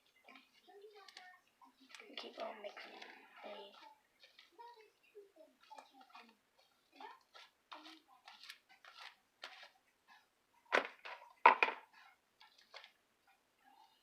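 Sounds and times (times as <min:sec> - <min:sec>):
sticky slime squelching: 0:00.0 - 0:11.2.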